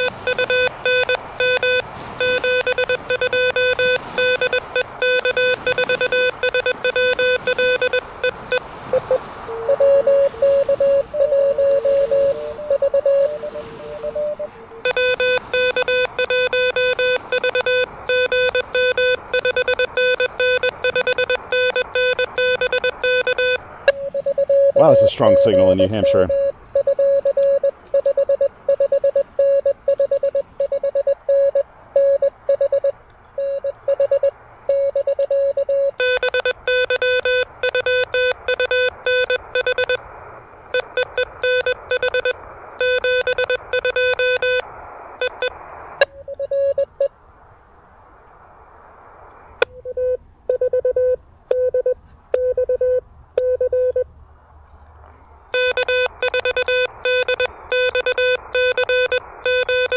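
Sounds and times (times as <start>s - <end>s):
morse code tone: 0.0s - 40.0s, 40.7s - 44.6s, 45.2s - 47.1s, 49.6s - 54.0s, 55.5s - 59.9s
radio band hiss: 24.7s - 26.6s.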